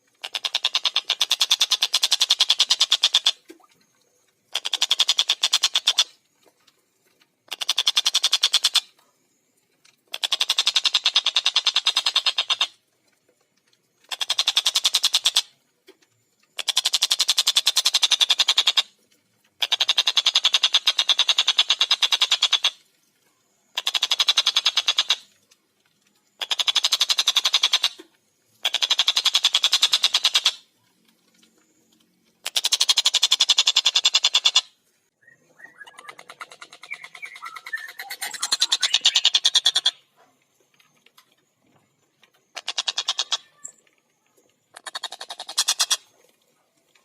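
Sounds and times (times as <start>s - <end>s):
kingfisher chattering call: 35.6s - 40.0s.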